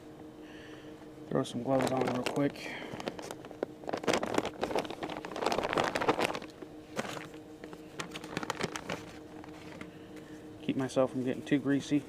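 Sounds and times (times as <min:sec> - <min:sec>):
faint steady hum: 0:00.0 - 0:12.0
gloves rustling and snapping: 0:01.6 - 0:10.3.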